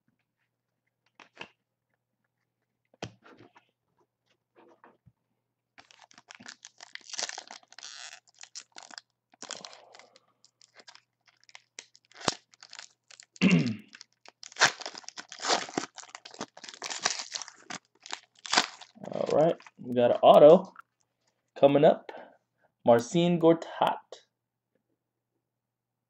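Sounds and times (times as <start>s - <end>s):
card pack wrapper crinkling: 5.8s - 20.5s.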